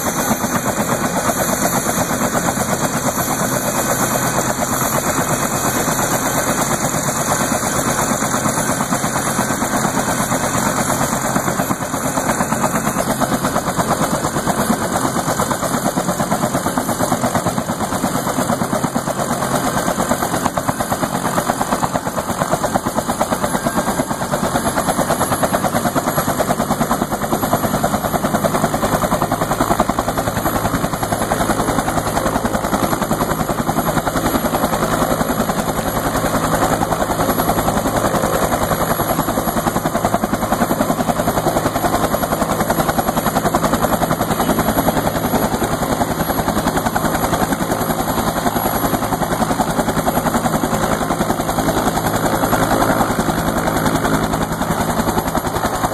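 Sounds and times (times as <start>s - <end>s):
helicopter rotor beating: 0.0s - 55.9s
helicopter turbine noise: 0.0s - 55.9s.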